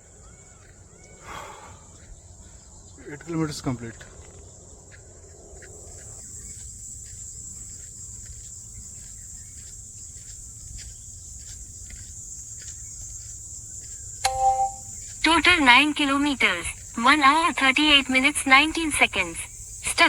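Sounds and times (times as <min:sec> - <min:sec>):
crickets chirping: 0:00.0 - 0:20.0.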